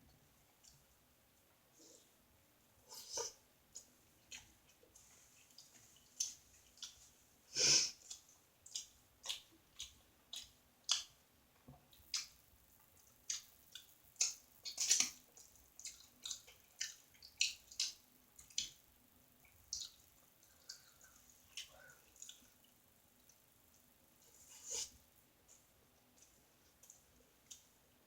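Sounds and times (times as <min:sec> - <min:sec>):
wet chewing and lip-smacking: 0:05.4 - 0:07.1, 0:08.0 - 0:11.2, 0:11.9 - 0:18.8, 0:19.4 - 0:23.9.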